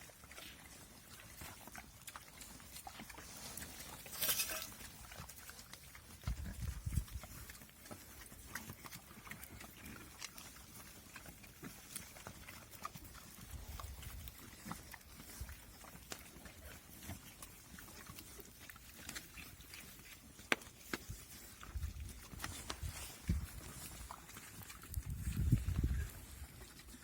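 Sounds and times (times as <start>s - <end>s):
pigs grunting and snuffling: 0.0s - 27.0s
small clicks and crunches: 18.9s - 25.5s.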